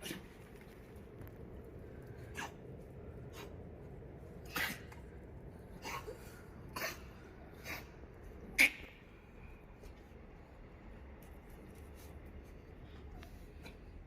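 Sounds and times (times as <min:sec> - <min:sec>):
animal sneezing: 0:02.3 - 0:02.6, 0:04.4 - 0:05.0, 0:05.8 - 0:09.0.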